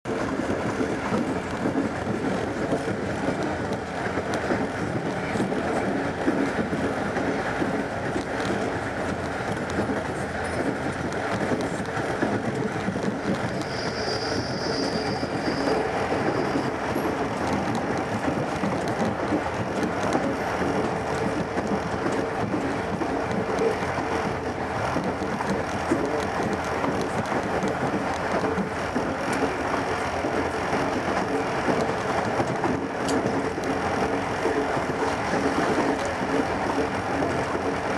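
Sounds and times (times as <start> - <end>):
train rumbling along track: 0.0 - 37.9.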